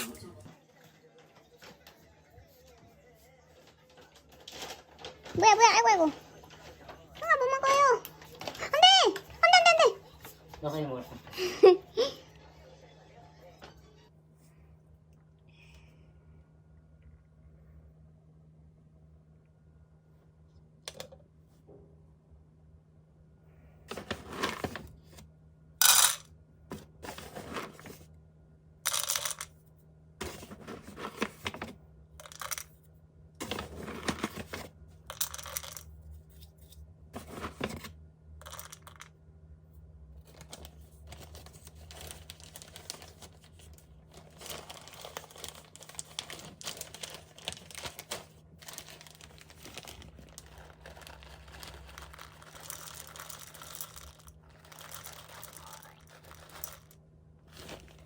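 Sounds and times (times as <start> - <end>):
faint steady hum: 0.0 - 58.0
rustling and crinkling handling noises: 2.7 - 11.6, 23.9 - 25.3, 26.7 - 28.1, 30.2 - 39.1, 40.2 - 58.0.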